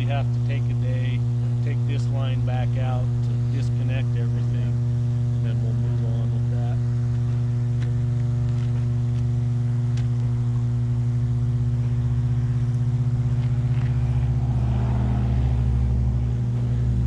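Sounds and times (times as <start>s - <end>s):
transformer electrical hum: 0.0s - 17.0s
low rumble: 6.5s - 17.0s.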